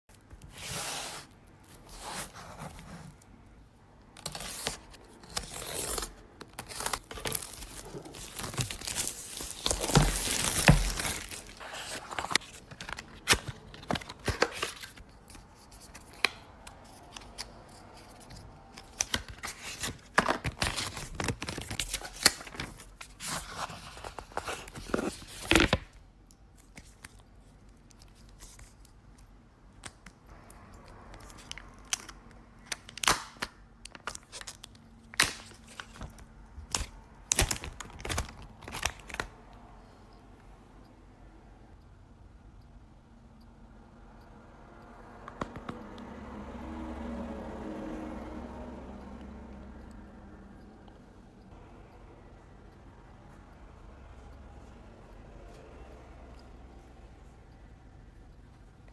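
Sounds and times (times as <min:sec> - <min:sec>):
cardboard rubbing and sliding: 0:00.5 - 0:03.2
packaging tearing and crinkling: 0:04.2 - 0:15.0, 0:18.8 - 0:25.8, 0:31.3 - 0:39.3.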